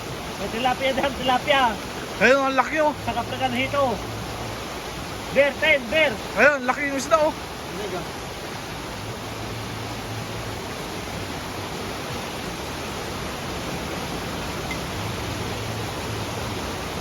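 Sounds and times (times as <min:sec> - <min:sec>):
creek water rushing: 0:00.0 - 0:17.0.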